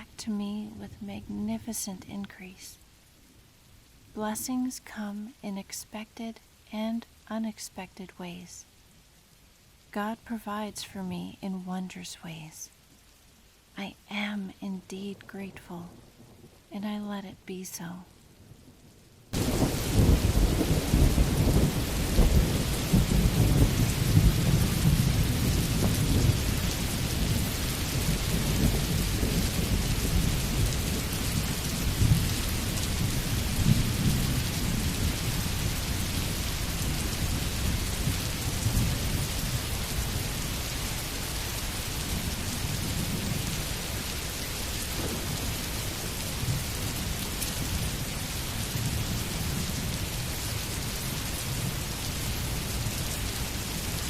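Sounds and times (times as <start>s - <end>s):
heavy rainfall: 0.0s - 54.0s
rolling thunder rumble: 19.4s - 40.4s.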